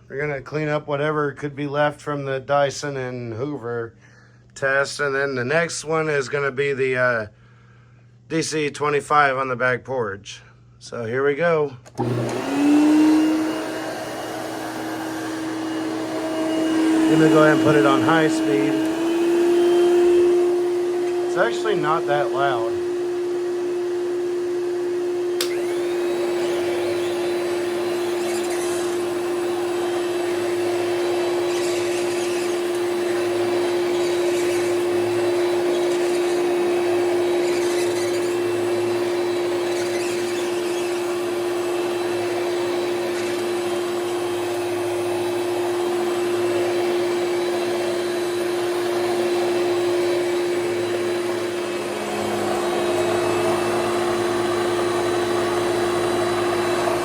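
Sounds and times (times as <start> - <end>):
vacuum click: 11.8 - 19.2, 25.3 - 29.2
vacuum cleaner running: 11.8 - 57.0.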